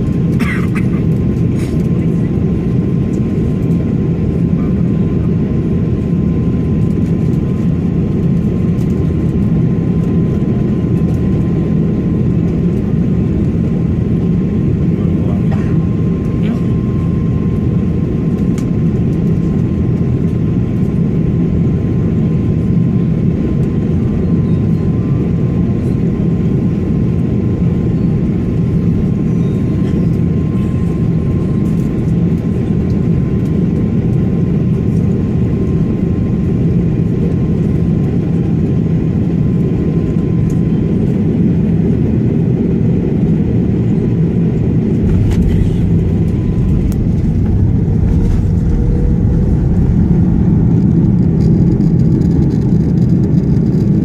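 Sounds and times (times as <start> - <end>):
airliner cabin rumble: 0.0 - 54.0
thin steady whine: 44.5 - 52.7.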